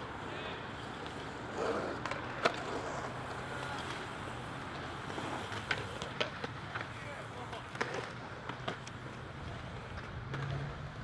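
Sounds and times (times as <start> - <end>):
skateboard wheels rolling on concrete: 0.0 - 11.0
sharp skateboard clack: 4.7 - 9.1.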